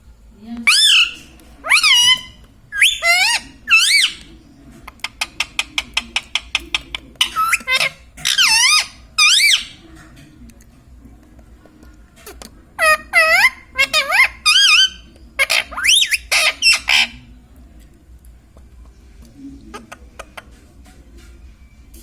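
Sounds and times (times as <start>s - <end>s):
parrot squawking: 0.7s - 4.3s, 5.0s - 9.8s, 12.8s - 17.3s.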